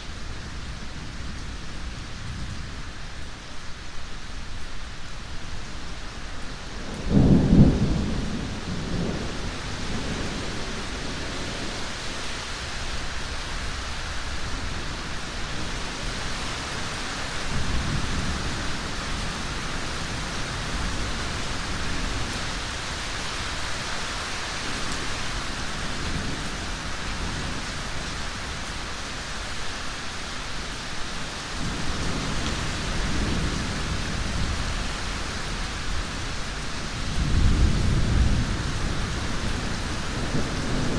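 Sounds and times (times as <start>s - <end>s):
steady rain: 0.0s - 40.9s
thunder rumbling: 6.8s - 11.9s, 31.6s - 40.9s.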